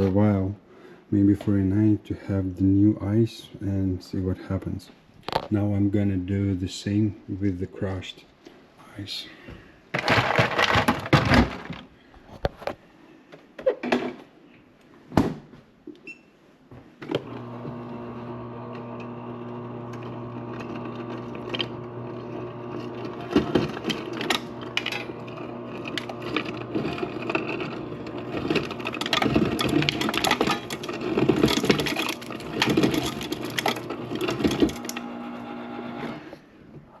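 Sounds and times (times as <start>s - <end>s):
crushed ice clattering: 10.0s - 11.9s, 20.1s - 35.0s
dispenser motor humming: 17.2s - 36.2s.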